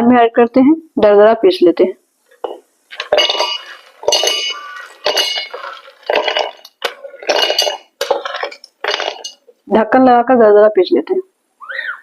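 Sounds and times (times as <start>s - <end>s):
nuts rattling in a steel jar: 3.0s - 9.4s.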